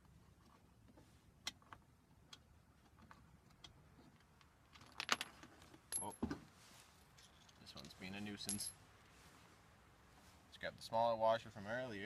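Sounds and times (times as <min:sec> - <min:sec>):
metal hardware clicks and clinks: 0:05.9 - 0:06.2, 0:08.4 - 0:08.8.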